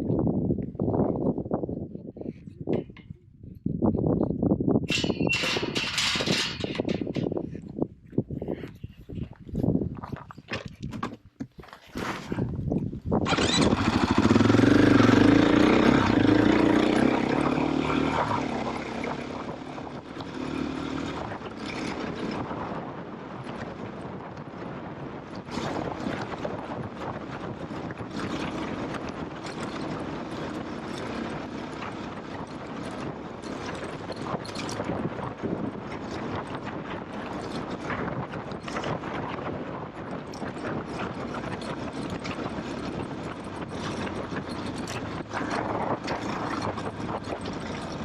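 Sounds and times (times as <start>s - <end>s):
rattles and bumps: 4.9s - 22.6s, 28.2s - 39.4s, 40.0s - 48.0s
motorcycle engine running: 13.2s - 48.0s.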